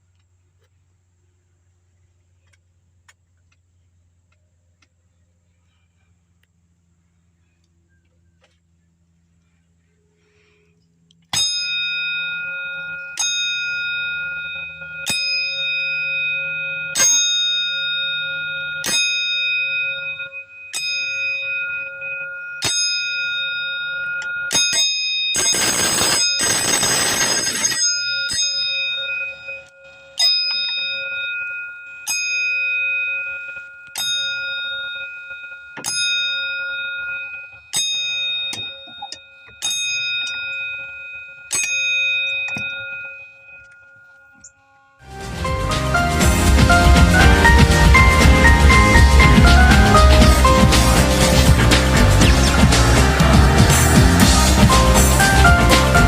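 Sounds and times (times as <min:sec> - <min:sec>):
harsh continuous alarm: 0:09.0 - 0:56.0
fire alarm bell strikes: 0:11.3 - 0:56.0.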